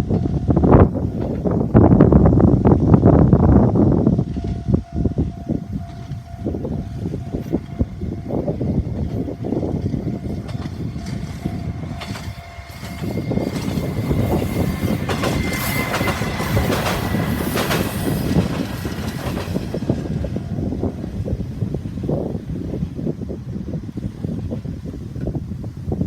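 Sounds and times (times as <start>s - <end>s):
train rumble: 0.0s - 26.0s
train wheels clacking on rail joints: 4.0s - 22.2s
high squeal: 4.6s - 20.9s.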